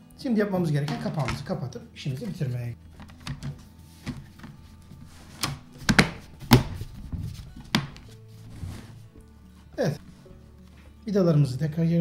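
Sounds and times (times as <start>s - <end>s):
plastic clips snapping: 5.4s - 6.8s.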